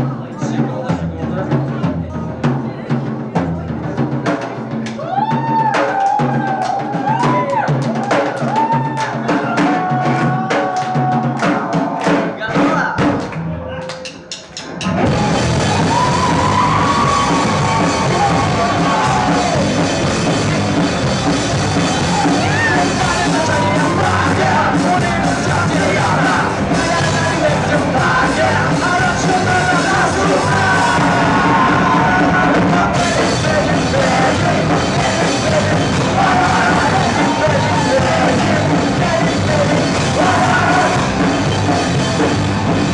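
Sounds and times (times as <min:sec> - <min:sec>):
rock band playing live: 0:14.1 - 0:42.9
person half singing half yelling: 0:15.6 - 0:20.0, 0:21.8 - 0:41.4.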